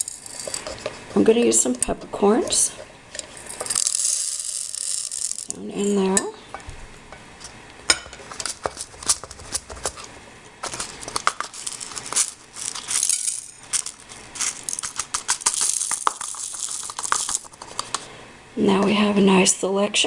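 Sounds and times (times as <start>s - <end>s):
peppercorns rattling into grinder: 0.0s - 1.0s, 2.5s - 6.2s, 10.6s - 18.1s.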